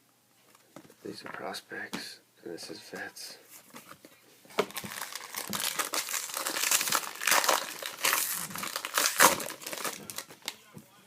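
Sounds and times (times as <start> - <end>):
card pack wrapper crinkling: 4.6 - 10.6.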